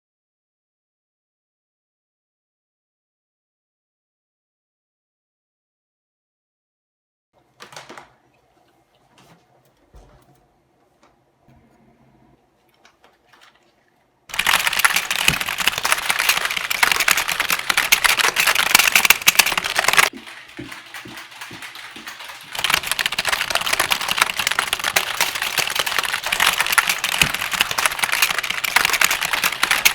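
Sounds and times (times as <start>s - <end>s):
mechanical keyboard clatter: 14.3s - 29.9s.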